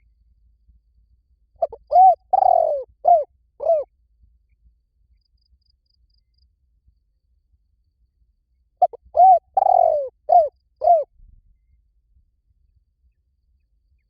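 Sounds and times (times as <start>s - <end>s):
dove cooing: 1.6s - 3.9s, 8.8s - 11.1s.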